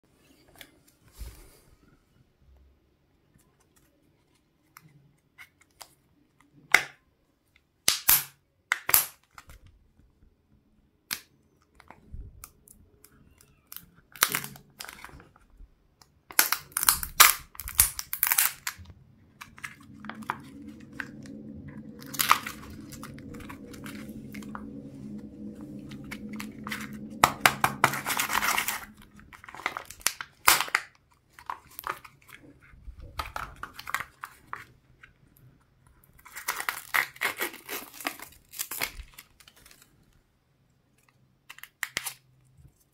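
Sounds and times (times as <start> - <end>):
packaging torn and crinkled: 13.7 - 15.4, 16.3 - 25.2, 25.8 - 34.7, 36.1 - 40.0, 41.0 - 42.5
steady low hum: 17.4 - 30.5.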